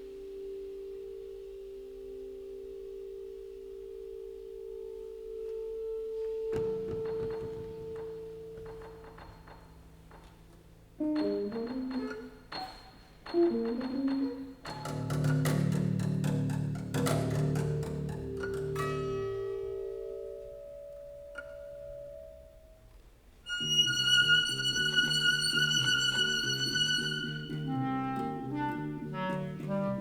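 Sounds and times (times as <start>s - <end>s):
chamber ensemble playing: 23.5s - 30.0s.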